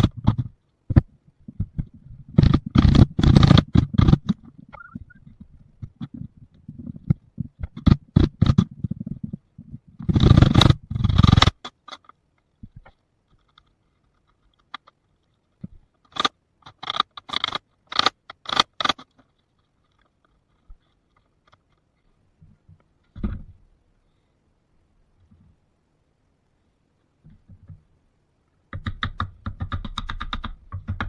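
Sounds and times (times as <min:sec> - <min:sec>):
chisel scraping wood: 0:10.0 - 0:12.1, 0:16.1 - 0:19.2.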